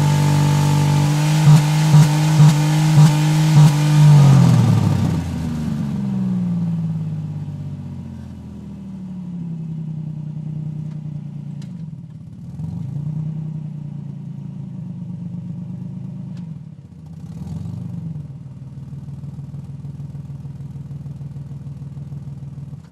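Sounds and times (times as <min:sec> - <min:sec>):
car engine idling and revving: 0:00.0 - 0:22.9.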